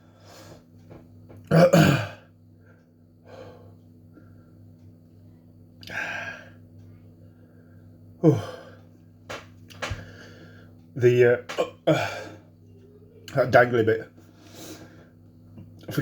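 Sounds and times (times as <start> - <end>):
man hiccupping: 1.4 - 2.3, 8.2 - 8.7, 11.5 - 12.3.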